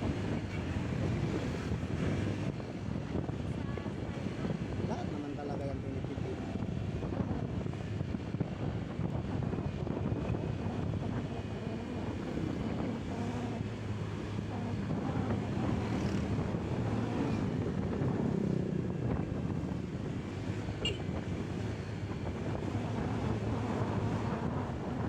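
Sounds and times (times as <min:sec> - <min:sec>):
road noise: 0:00.0 - 0:25.0
wind buffeting microphone: 0:00.0 - 0:25.0
car engine drone: 0:10.0 - 0:25.0.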